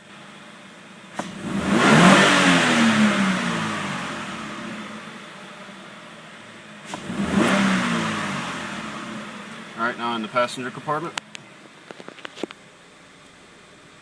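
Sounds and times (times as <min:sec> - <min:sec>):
car engine idling and revving: 0:00.0 - 0:14.0.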